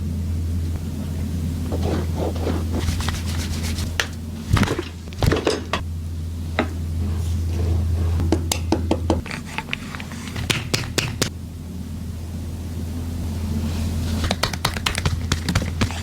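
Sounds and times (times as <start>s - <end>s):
steady low hum: 0.0s - 16.0s
hands slapping and knocking: 8.3s - 11.3s, 14.2s - 16.0s.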